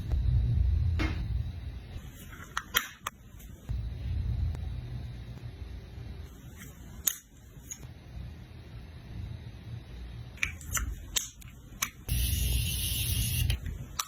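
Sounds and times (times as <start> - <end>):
low rumble: 0.0 - 1.8.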